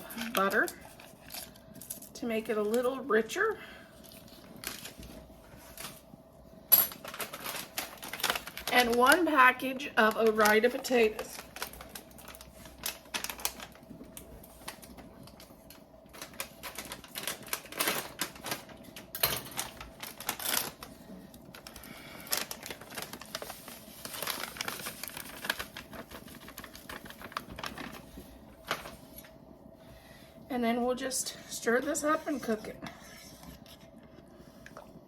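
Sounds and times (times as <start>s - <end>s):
packet crinkling: 0.0s - 2.8s, 4.0s - 6.1s, 6.9s - 29.3s.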